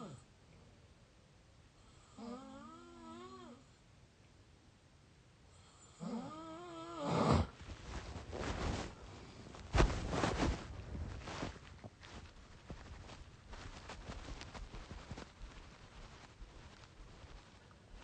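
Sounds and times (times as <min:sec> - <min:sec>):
person snoring through mouth: 0:02.0 - 0:03.6, 0:05.8 - 0:07.6.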